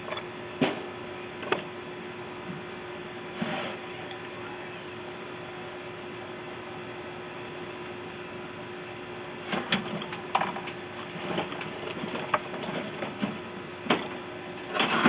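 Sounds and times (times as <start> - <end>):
clatter of tools and metal parts: 0.0 - 0.3.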